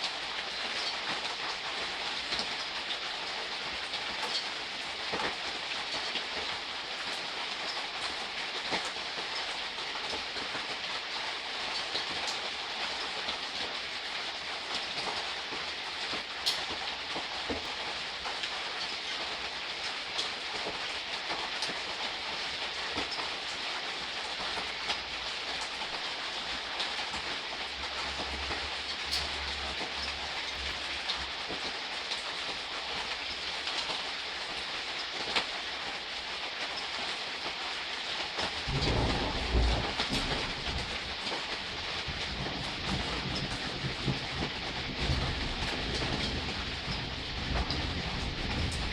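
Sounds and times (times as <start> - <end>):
gentle rain falling: 0.0 - 48.9
raindrops ticking: 14.4 - 37.6, 38.2 - 48.9.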